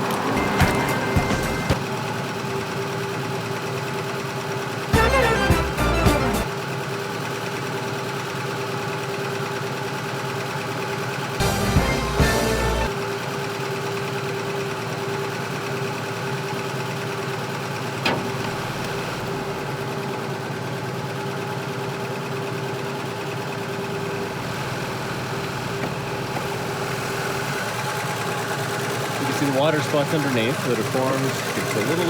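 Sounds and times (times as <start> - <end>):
car engine idling: 0.0 - 32.0.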